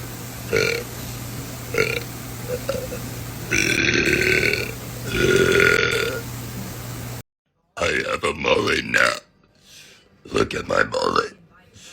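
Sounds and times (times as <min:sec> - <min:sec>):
woman burping: 0:01.7 - 0:06.2.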